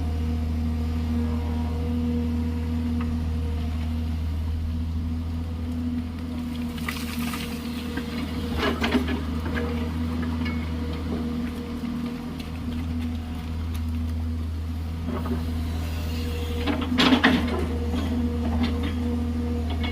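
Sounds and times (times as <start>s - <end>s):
excavator diesel engine running: 0.0s - 19.9s.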